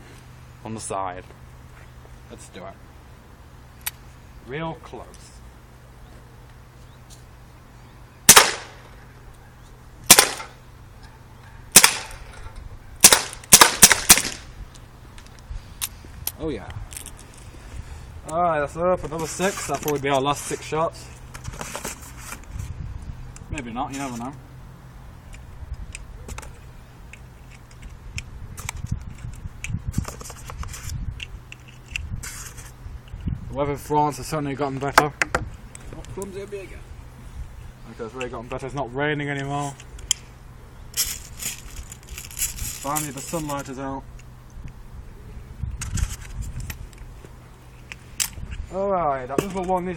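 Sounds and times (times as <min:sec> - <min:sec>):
steady low rumble: 0:00.0 - 0:19.4, 0:22.4 - 0:23.8, 0:39.7 - 0:48.8
air pistol shots: 0:08.3 - 0:08.9, 0:10.1 - 0:10.6, 0:11.7 - 0:12.3, 0:13.0 - 0:14.5.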